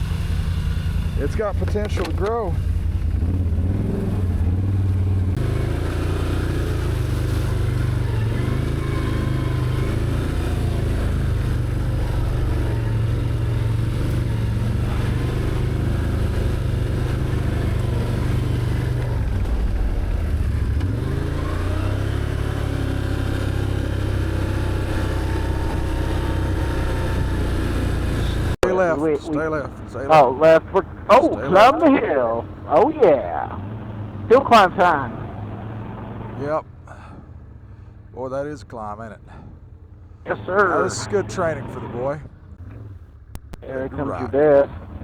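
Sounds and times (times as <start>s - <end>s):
atv engine running: 0.0s - 45.0s.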